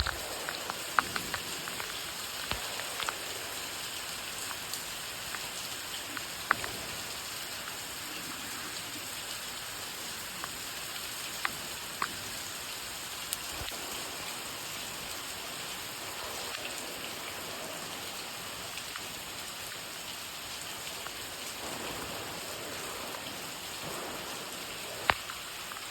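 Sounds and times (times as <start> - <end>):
raindrop clicks: 0.0 - 7.8, 10.2 - 12.6, 13.2 - 14.2, 20.9 - 25.9
steady rain falling: 0.0 - 25.9.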